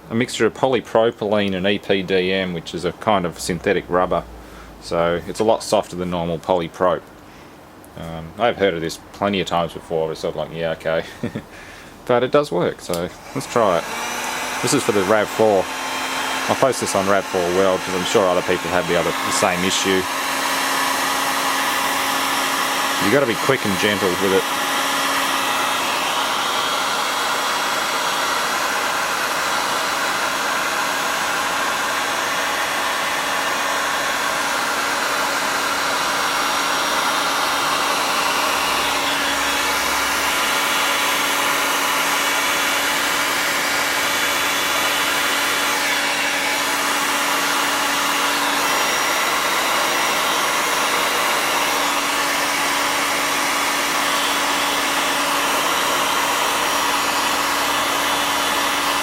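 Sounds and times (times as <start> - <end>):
steady low hum: 1.5 - 14.0
heat gun blowing air: 10.5 - 12.0, 12.9 - 59.0.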